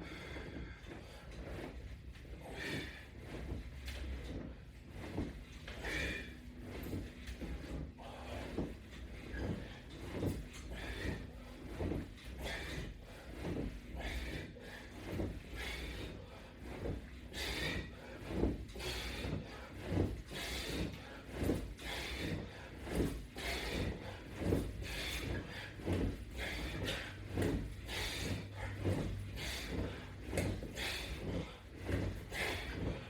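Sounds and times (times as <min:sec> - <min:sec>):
person breathing hard: 0:00.0 - 0:01.4, 0:02.4 - 0:03.5, 0:10.6 - 0:33.0.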